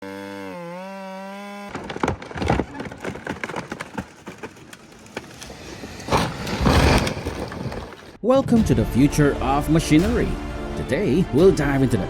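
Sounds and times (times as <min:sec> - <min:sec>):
wood splintering cracks: 0:01.7 - 0:08.2.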